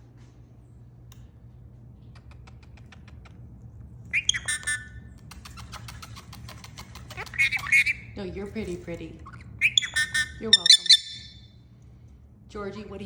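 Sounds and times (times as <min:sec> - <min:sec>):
bird clicking: 0:02.1 - 0:03.4, 0:04.1 - 0:08.0
bird squawking: 0:04.1 - 0:08.2, 0:09.2 - 0:11.4.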